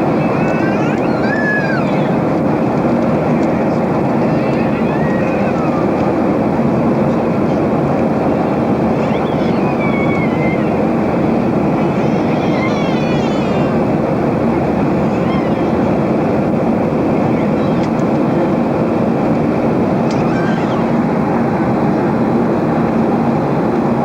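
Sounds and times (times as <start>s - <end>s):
airliner cabin engine and airflow rush: 0.0s - 24.0s.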